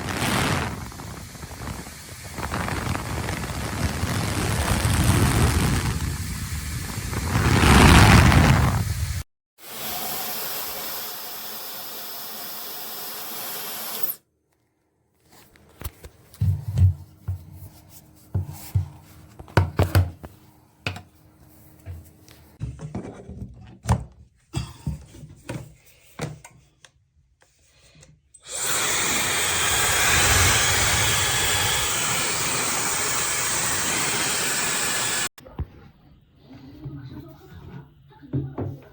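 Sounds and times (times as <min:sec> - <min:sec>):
hair dryer blowing air: 0:00.0 - 0:14.2, 0:28.4 - 0:35.3.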